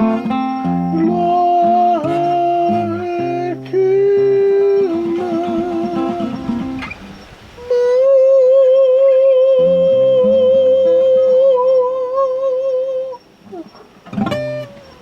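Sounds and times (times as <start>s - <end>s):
acoustic guitar chord: 0.0s - 7.2s, 9.5s - 12.1s
person singing long high note: 0.9s - 6.8s, 7.6s - 13.2s.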